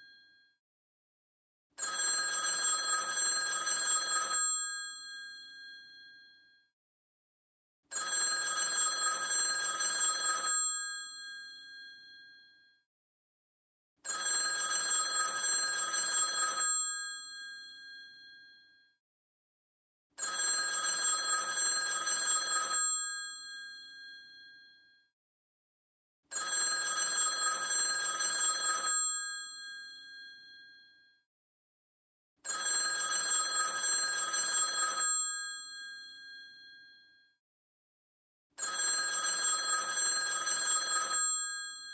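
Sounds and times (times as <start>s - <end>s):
telephone bell ringing: 1.8s - 6.4s, 7.9s - 12.6s, 14.0s - 18.7s, 20.2s - 24.9s, 26.3s - 31.0s, 32.4s - 37.1s, 38.6s - 41.9s.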